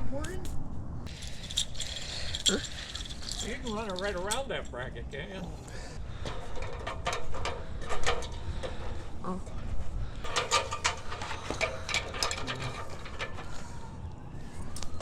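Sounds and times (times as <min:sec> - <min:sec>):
metallic clicks and clanks: 0:01.1 - 0:04.7, 0:06.3 - 0:08.8, 0:10.2 - 0:13.6.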